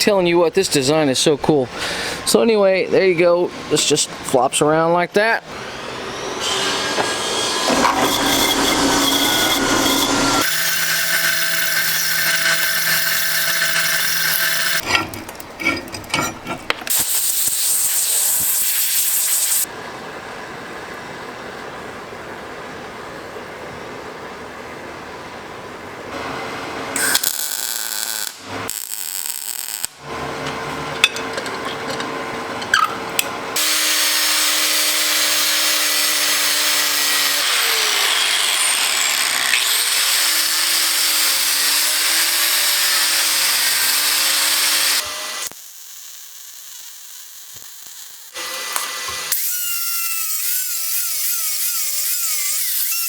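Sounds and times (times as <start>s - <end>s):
harsh grinding with motor whine: 5.5s - 14.9s
power tools cutting metal: 5.5s - 19.7s, 27.0s - 30.0s, 33.6s - 53.0s.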